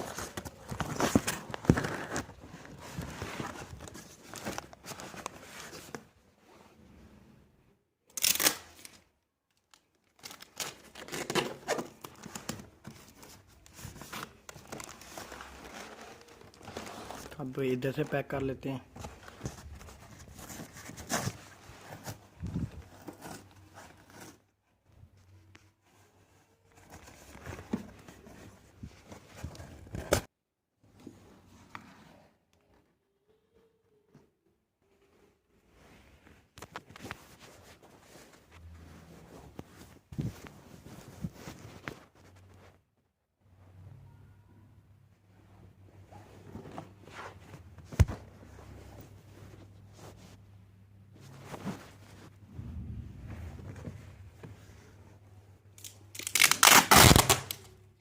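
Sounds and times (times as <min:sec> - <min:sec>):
packing material tearing and crinkling: 0:08.1 - 0:12.6, 0:55.8 - 0:57.8.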